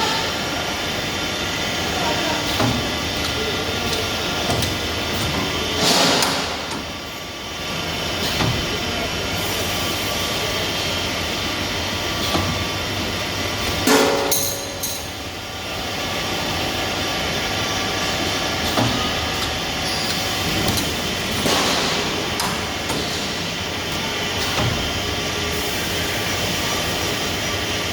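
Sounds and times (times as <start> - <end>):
welding machinery humming: 0.0 - 27.9
sharp metallic clanks: 19.8 - 23.4.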